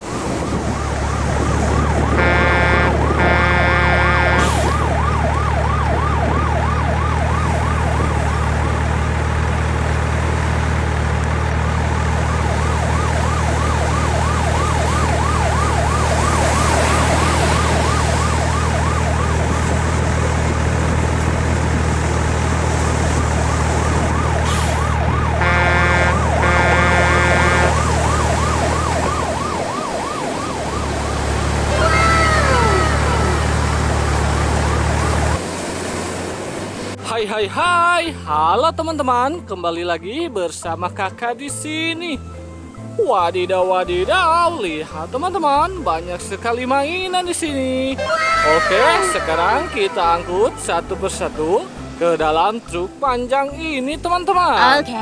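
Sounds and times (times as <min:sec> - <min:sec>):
low engine drone: 0:00.0 - 0:37.0
siren yelping: 0:00.3 - 0:09.1, 0:12.2 - 0:20.5, 0:22.9 - 0:35.4, 0:48.1 - 0:50.1
horn blasts: 0:02.1 - 0:04.9, 0:24.4 - 0:28.1.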